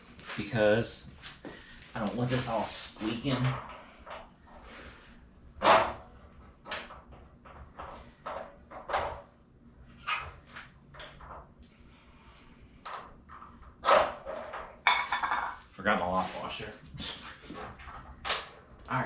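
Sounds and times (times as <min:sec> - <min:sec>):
hardware knocking and clinking: 0:12.4 - 0:15.6.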